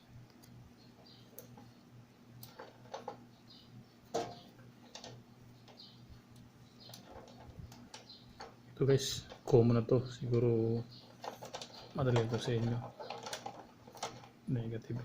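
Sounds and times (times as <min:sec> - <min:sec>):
cable handling clicks and knocks: 0:02.4 - 0:03.2, 0:04.1 - 0:05.8, 0:11.1 - 0:15.0.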